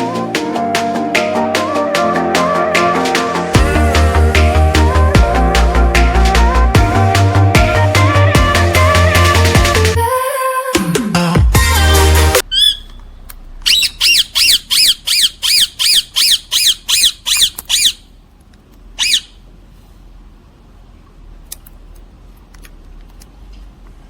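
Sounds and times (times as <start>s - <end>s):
bird calling rapidly: 11.9s - 18.1s, 19.0s - 19.4s.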